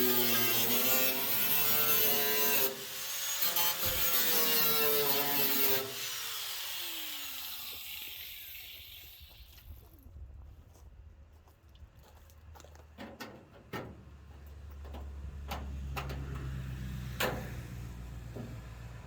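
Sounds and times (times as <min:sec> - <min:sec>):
angle grinder cutting steel: 0:00.0 - 0:09.5.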